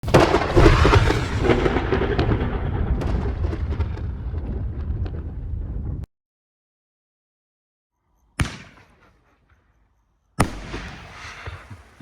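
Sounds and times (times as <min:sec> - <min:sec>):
fireworks burst: 0:00.0 - 0:06.0, 0:10.4 - 0:12.0
dense fireworks crackling: 0:00.0 - 0:06.1, 0:10.4 - 0:12.0
deep rumbling echo: 0:00.1 - 0:06.1.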